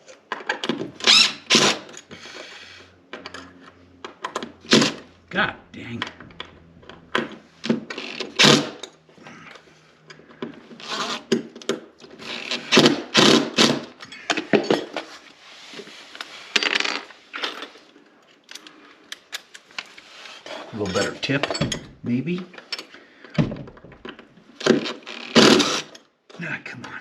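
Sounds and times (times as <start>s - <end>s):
metal tools clinking and rattling: 14.0s - 15.2s, 20.5s - 23.0s.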